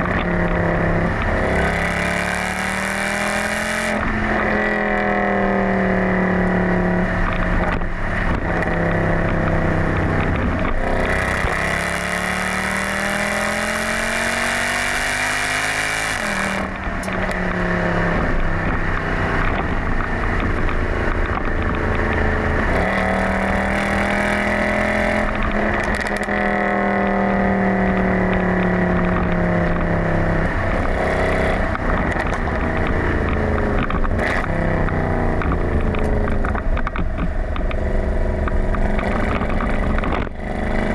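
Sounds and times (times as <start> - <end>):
car engine accelerating: 0.0 - 40.9.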